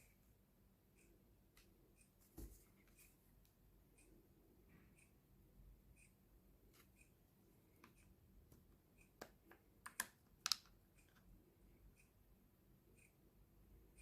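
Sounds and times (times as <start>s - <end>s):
sharp clicks and taps: 7.8s - 11.2s.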